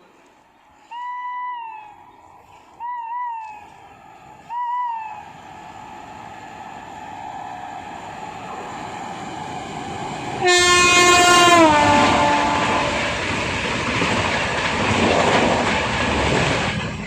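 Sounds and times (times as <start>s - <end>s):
rising-and-falling call: 2.8s - 12.2s
train rumble: 3.5s - 17.0s
locomotive horn blast: 10.4s - 13.0s.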